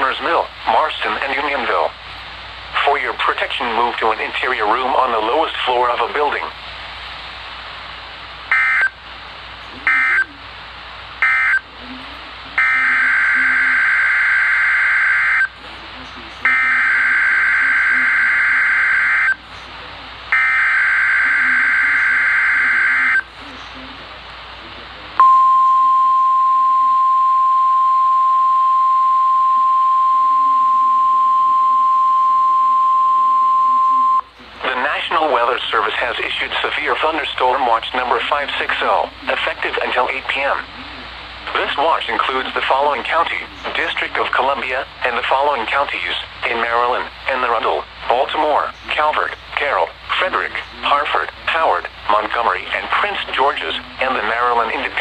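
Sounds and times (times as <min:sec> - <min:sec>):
faint radio hiss: 0:00.0 - 0:55.0
steady alarm beep: 0:08.5 - 0:09.0, 0:12.6 - 0:15.5, 0:16.5 - 0:19.4, 0:20.3 - 0:23.3, 0:25.2 - 0:34.3
buzzing data tone: 0:12.6 - 0:15.6, 0:16.4 - 0:19.4, 0:20.3 - 0:23.3.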